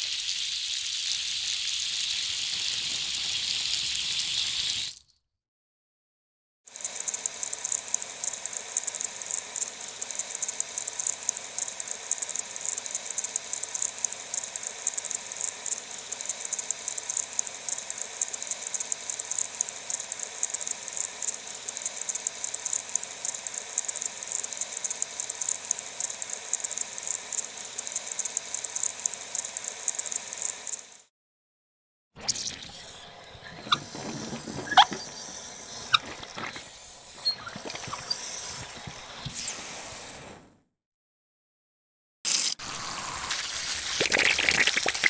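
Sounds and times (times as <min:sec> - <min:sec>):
water running from hose: 0:00.0 - 0:05.1, 0:42.6 - 0:45.0.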